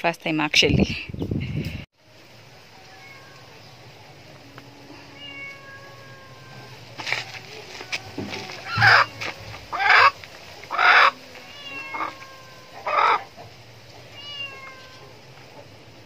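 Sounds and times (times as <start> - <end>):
chicken squawking: 7.7 - 15.0.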